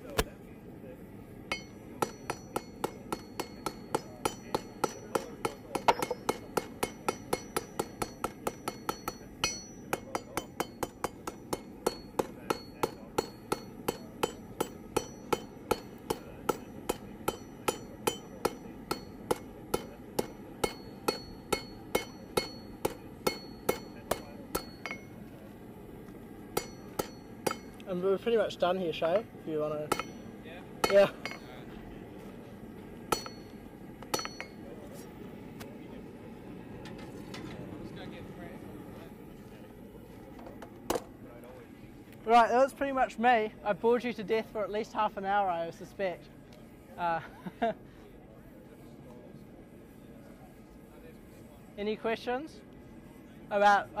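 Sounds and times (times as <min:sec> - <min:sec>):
hammer striking steel on anvil: 0:01.5 - 0:25.3, 0:26.5 - 0:27.9, 0:29.0 - 0:31.6, 0:33.1 - 0:34.7.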